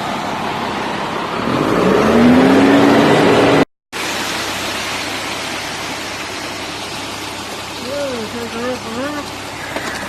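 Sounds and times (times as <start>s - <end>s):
truck engine revving: 0.3s - 3.7s.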